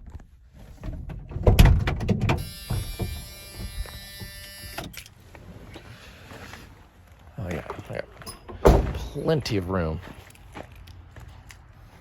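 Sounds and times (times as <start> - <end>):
knocks and thump: 0.8 - 3.8, 8.5 - 9.2
door-open warning buzzer: 2.3 - 5.0
door buzzer click: 2.4 - 4.9
truck door opening: 8.2 - 9.2.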